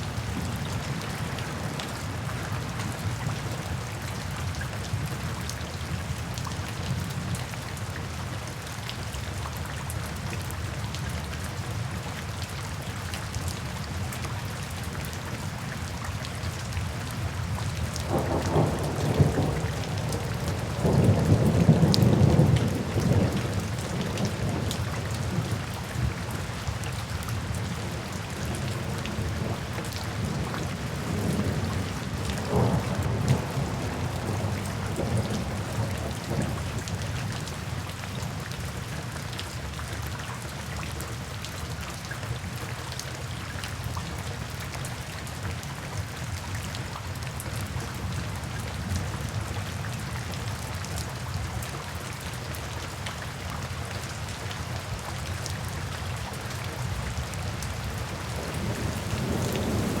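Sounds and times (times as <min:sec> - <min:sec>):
steady rain falling: 0:00.0 - 1:00.0
low rolling thunder: 0:18.0 - 0:26.4, 0:27.8 - 0:37.4, 0:57.0 - 1:00.0.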